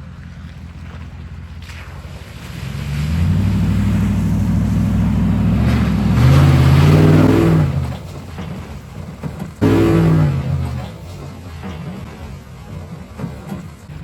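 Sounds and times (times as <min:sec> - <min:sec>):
truck engine revving under load: 0:02.4 - 0:14.0.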